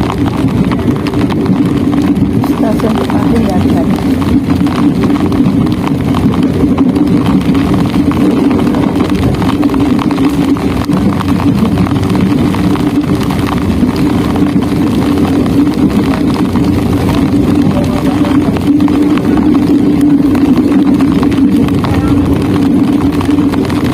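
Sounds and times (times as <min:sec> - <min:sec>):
train rumbling: 0:00.0 - 0:23.9.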